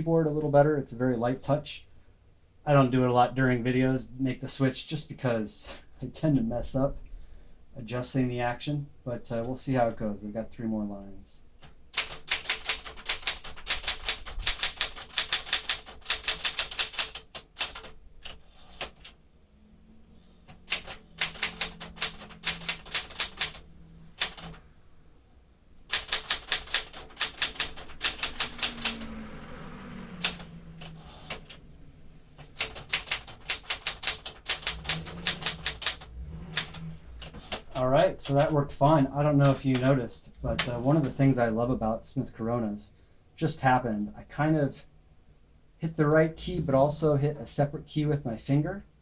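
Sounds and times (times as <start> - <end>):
typewriter carriage return: 11.6 - 19.2, 20.5 - 24.6, 25.9 - 29.1, 30.2 - 31.6, 32.4 - 38.6
typewriter keystrokes: 11.9 - 19.2, 20.5 - 24.6, 25.9 - 29.1, 30.2 - 31.6, 32.4 - 38.6, 39.4 - 40.0.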